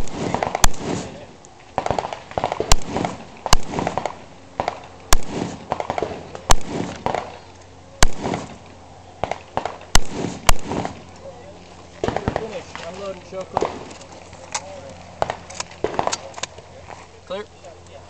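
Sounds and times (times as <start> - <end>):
voices: 0.0 - 2.2, 2.8 - 18.0
rifle shots: 0.0 - 7.4, 8.0 - 11.1, 12.0 - 12.9, 13.5 - 13.9, 15.2 - 16.3.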